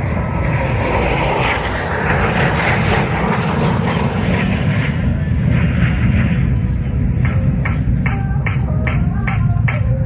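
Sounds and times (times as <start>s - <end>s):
continuous low rumble: 0.0s - 10.0s
pop music over loudspeaker: 7.3s - 10.0s.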